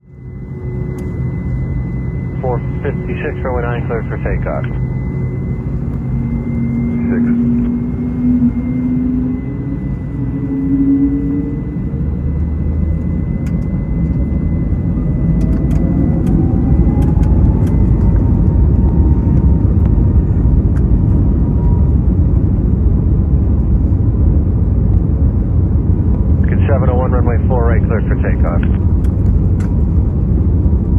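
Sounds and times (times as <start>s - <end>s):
jet engines spooling up: 0.2s - 20.8s, 26.4s - 29.7s
takeoff roll rumble: 0.2s - 30.9s.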